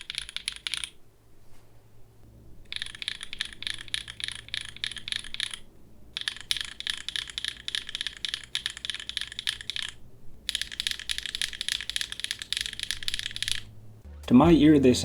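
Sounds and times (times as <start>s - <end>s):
mechanical keyboard typing: 0.0s - 1.0s, 2.7s - 13.7s.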